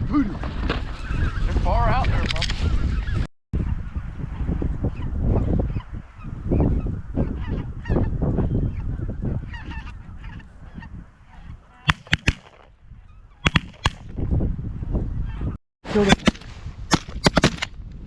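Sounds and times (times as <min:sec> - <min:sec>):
wind noise: 0:00.0 - 0:18.0
geese honking: 0:07.2 - 0:12.0
shotgun blasts: 0:11.9 - 0:12.7, 0:13.4 - 0:14.1, 0:15.9 - 0:17.7.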